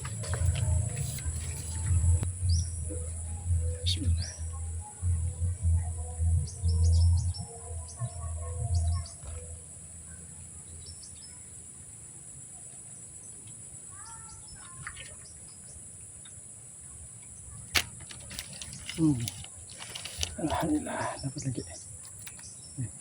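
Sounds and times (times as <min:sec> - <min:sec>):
low rumble: 0:00.0 - 0:10.3
high-pitched insect drone: 0:00.0 - 0:10.8
bird chirps: 0:00.0 - 0:11.6.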